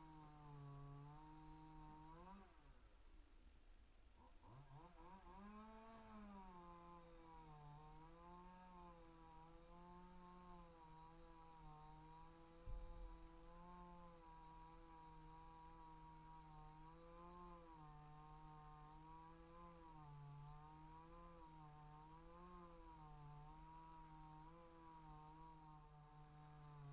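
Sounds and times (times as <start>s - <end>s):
chainsaw engine revving: 0.0s - 2.7s, 4.2s - 26.9s
low thump: 12.7s - 13.2s.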